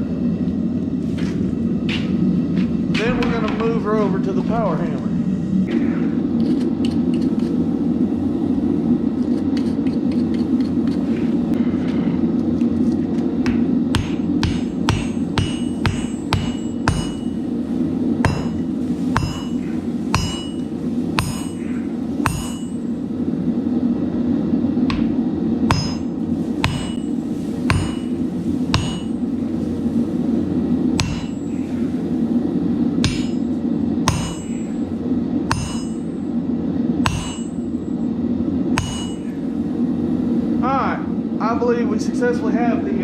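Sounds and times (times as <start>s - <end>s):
low rushing noise: 0.0s - 6.4s
hammer striking metal on anvil: 13.5s - 17.4s, 18.2s - 22.9s, 24.9s - 27.1s, 27.7s - 29.2s, 31.0s - 31.6s, 33.0s - 34.8s, 35.5s - 36.2s, 37.0s - 37.9s, 38.8s - 39.4s.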